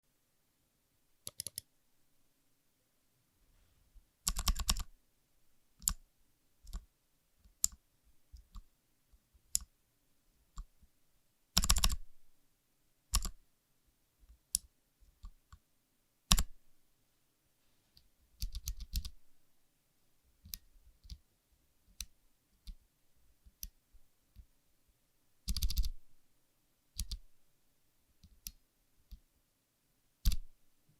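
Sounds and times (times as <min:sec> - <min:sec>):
mechanical keyboard typing: 0:01.2 - 0:01.7, 0:04.2 - 0:04.9, 0:11.6 - 0:12.0, 0:13.1 - 0:13.4, 0:18.4 - 0:19.2, 0:25.4 - 0:26.0, 0:27.0 - 0:27.2.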